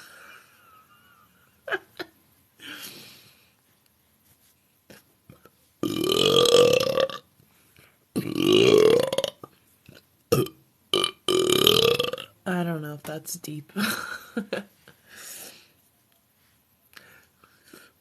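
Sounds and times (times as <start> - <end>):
woman belching: 5.8 - 7.2, 8.2 - 9.5, 10.3 - 12.3.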